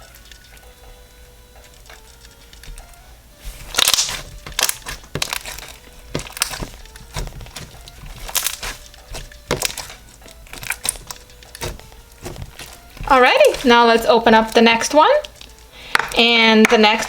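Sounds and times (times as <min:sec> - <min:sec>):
slime crackling and popping: 0:00.0 - 0:17.0.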